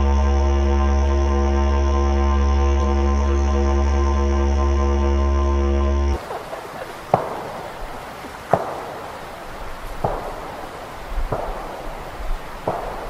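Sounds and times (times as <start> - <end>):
outdoor hiss: 6.2 - 13.0.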